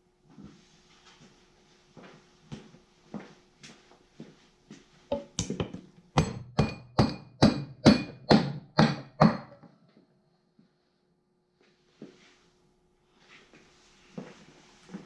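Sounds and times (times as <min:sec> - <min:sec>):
hammer striking metal cover: 0:05.1 - 0:09.7.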